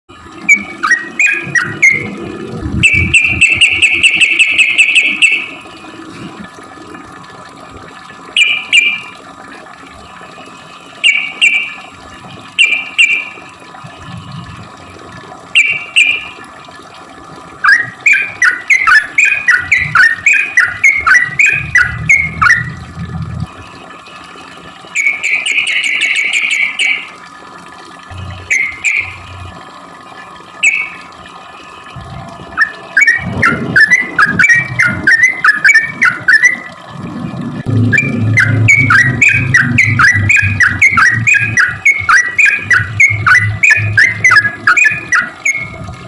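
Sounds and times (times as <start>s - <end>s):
low rumbles: 1.4s - 4.1s, 36.8s - 44.6s
bird singing and calling: 17.7s - 22.7s, 28.5s - 29.3s, 37.8s - 45.8s.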